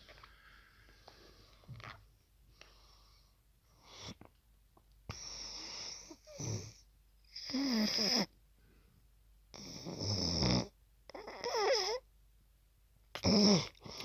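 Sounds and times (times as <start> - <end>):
noisy in-breath: 0.0 - 1.7
snort: 5.1 - 8.3, 9.6 - 12.0, 13.2 - 14.0
person snoring loudly: 13.2 - 13.8.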